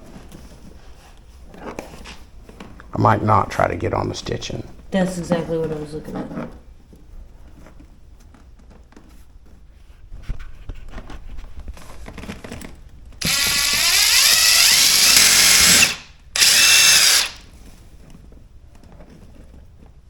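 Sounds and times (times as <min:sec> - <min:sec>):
electric drill spinning: 0:13.2 - 0:17.5.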